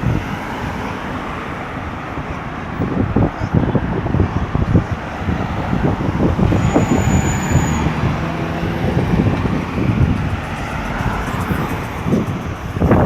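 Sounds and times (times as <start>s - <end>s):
traffic rumble: 0.0s - 13.0s.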